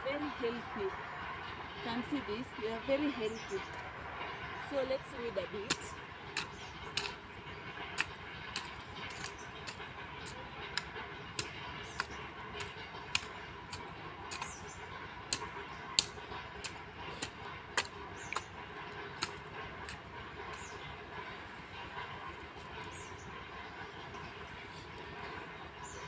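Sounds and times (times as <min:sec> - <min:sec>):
sharp ticks of weeding: 0:05.7 - 0:07.3, 0:07.9 - 0:20.9.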